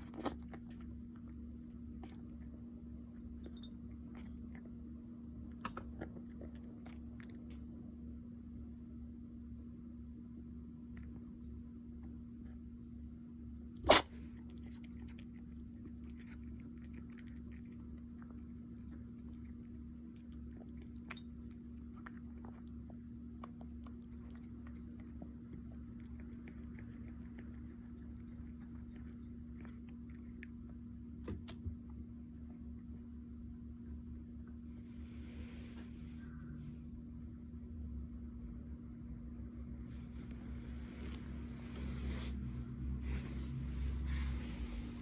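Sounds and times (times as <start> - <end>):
steady low hum: 0.0 - 45.0
animal sneezing: 13.8 - 14.2.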